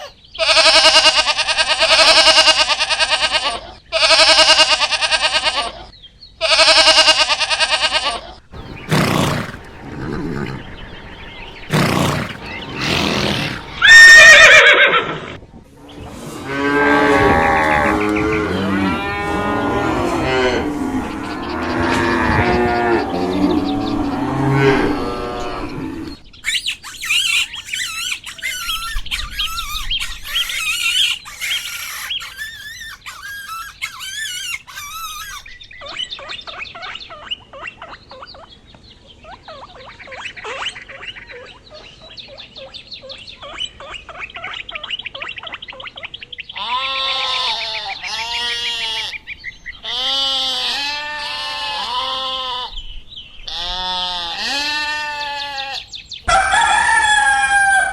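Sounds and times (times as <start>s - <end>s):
cow mooing: 16.4s - 26.1s
high rapid chirps and squawks: 26.4s - 35.5s
sheep bleating: 46.6s - 49.2s, 49.8s - 52.7s, 53.5s - 55.9s.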